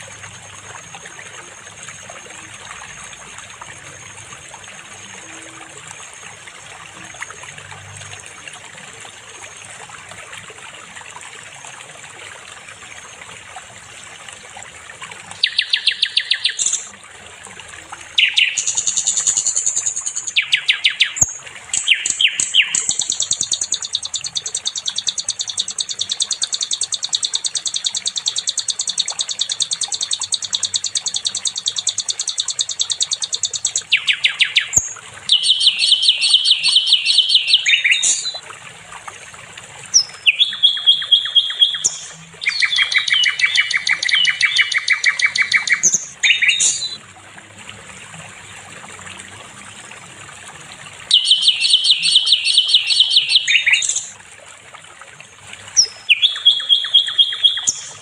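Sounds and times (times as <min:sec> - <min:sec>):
bird singing fast trills: 0:15.4 - 0:16.9, 0:18.2 - 0:38.4, 0:39.9 - 0:47.0, 0:51.1 - 0:54.2, 0:55.8 - 0:58.0.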